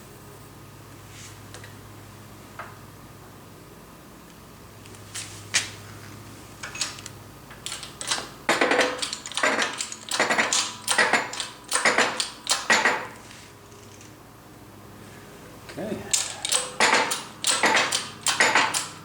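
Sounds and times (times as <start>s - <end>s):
metal parts clicking and clattering: 6.6s - 14.2s, 16.1s - 19.0s.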